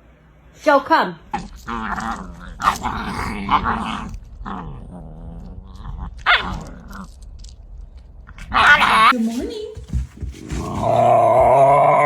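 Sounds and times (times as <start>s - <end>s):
dog growling: 1.2s - 9.4s, 10.2s - 12.0s
dog yelping: 5.8s - 7.2s, 8.4s - 9.1s.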